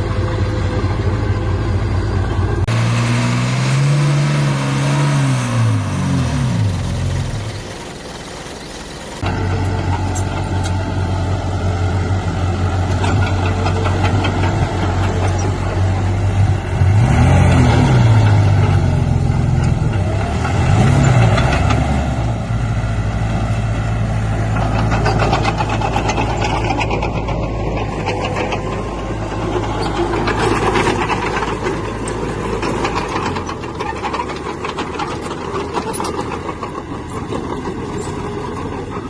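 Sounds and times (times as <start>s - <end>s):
heavy vehicle engine revving: 2.6s - 9.3s.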